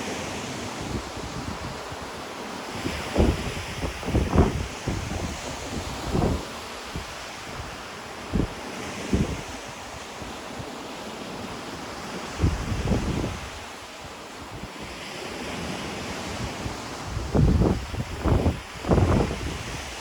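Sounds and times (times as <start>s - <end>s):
wind buffeting microphone: 0.0s - 10.8s, 12.0s - 20.0s
ocean surf washing on shore: 0.0s - 20.0s.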